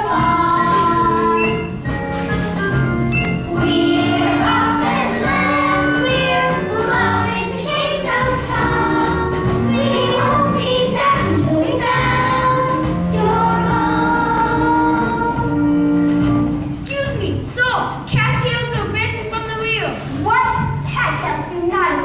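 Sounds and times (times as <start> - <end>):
group of voices singing: 0.0 - 1.7, 3.5 - 15.9
instrumental backing: 0.0 - 20.9.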